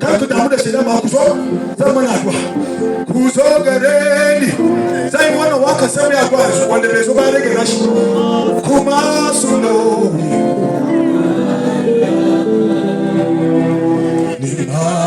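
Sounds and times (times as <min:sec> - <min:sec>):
instrumental backing: 0:00.0 - 0:14.6
voices singing gospel music: 0:00.0 - 0:15.0.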